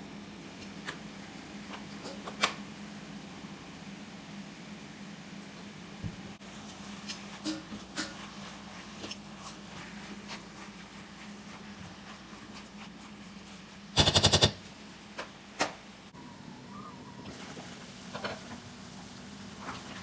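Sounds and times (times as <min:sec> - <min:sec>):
light cooking clicks and knocks: 0:00.5 - 0:03.0, 0:05.4 - 0:13.9, 0:14.6 - 0:15.9, 0:17.3 - 0:20.0
rapid clicking burst: 0:14.0 - 0:14.6.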